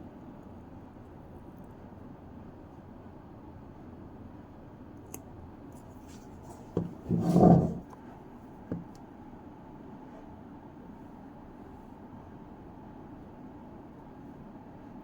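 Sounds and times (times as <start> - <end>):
short scraping rub: 6.1 - 7.9.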